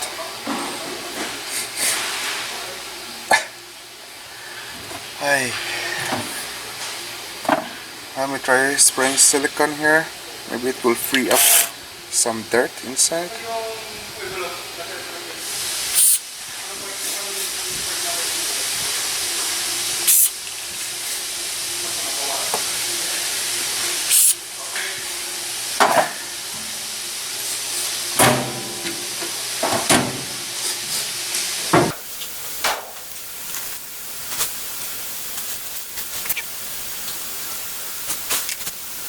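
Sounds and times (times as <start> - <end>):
aerosol spray hissing: 10.6 - 11.7, 15.6 - 16.3, 17.0 - 20.4, 22.3 - 24.4, 31.9 - 39.0.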